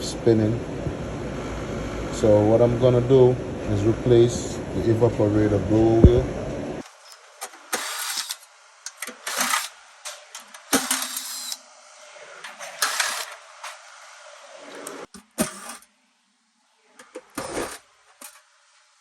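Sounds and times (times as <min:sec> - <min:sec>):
tools scraping and clicking metal: 0:06.8 - 0:11.6, 0:12.4 - 0:14.0, 0:14.8 - 0:15.8, 0:17.0 - 0:18.4.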